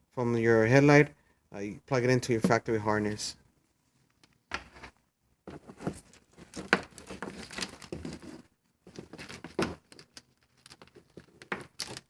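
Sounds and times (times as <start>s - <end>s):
wiring harness crinkling: 6.0s - 8.3s.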